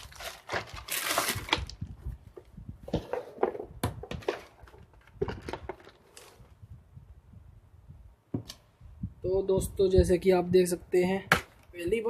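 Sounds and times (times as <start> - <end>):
packaging rustling: 0.0 - 2.0.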